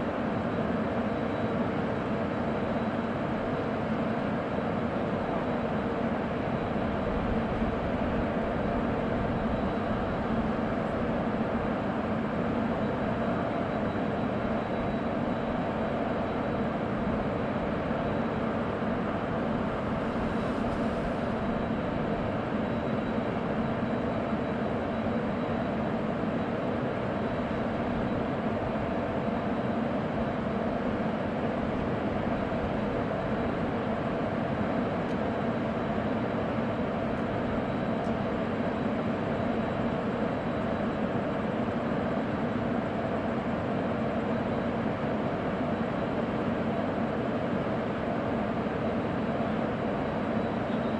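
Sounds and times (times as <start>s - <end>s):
faint high whine: 0.0s - 50.9s
locomotive machinery humming: 5.3s - 40.4s.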